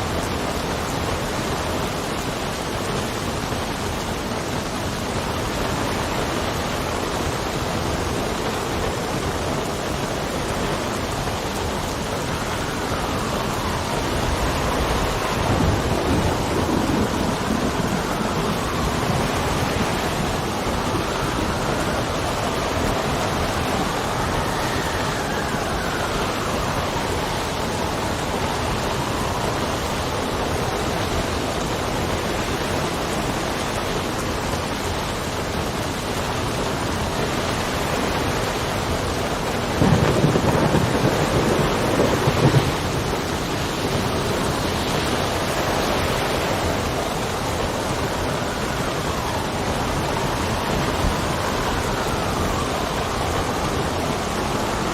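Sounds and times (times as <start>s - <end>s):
howling wind: 0.0s - 54.9s
steady rain: 0.0s - 54.9s
low rumble of thunder: 11.6s - 30.9s, 38.4s - 54.8s.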